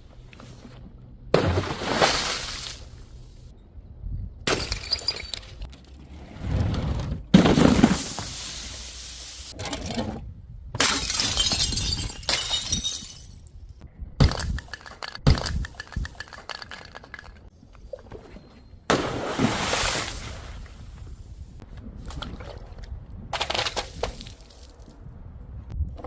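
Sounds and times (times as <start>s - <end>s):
glass bottles shattering: 4.5s - 5.7s, 10.8s - 13.4s.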